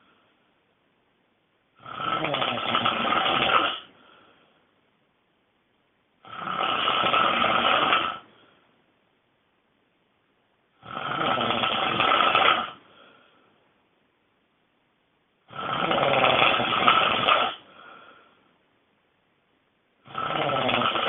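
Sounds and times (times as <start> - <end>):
person snoring loudly: 1.8 - 3.9, 6.2 - 8.3, 10.8 - 12.9, 15.5 - 18.1, 20.0 - 21.0.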